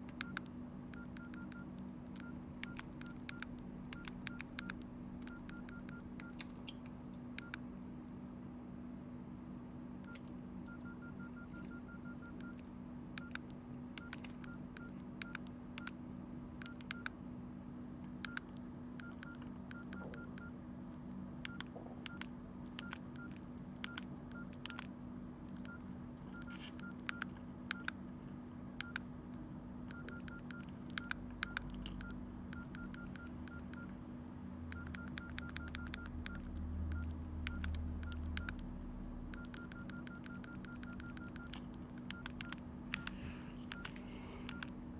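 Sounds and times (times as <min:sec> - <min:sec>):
steady low hum: 0:00.0 - 0:44.9
phone keypad beeps: 0:00.2 - 0:06.4, 0:07.4 - 0:07.6, 0:10.0 - 0:16.0, 0:16.6 - 0:17.1, 0:18.2 - 0:20.6, 0:21.5 - 0:24.9, 0:25.6 - 0:28.0, 0:28.8 - 0:29.1, 0:29.9 - 0:34.0, 0:34.7 - 0:38.6, 0:39.2 - 0:44.7.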